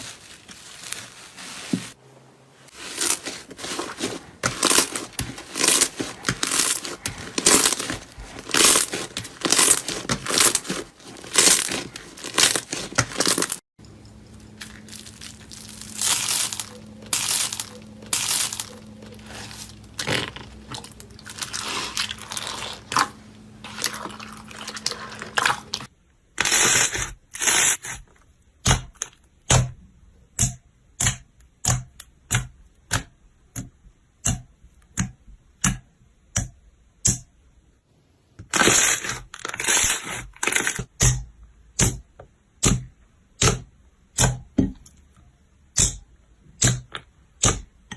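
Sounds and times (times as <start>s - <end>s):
steady low hum: 2.0s - 25.9s
slime squishing and crackling: 2.7s - 13.6s, 14.4s - 28.0s, 38.4s - 41.2s.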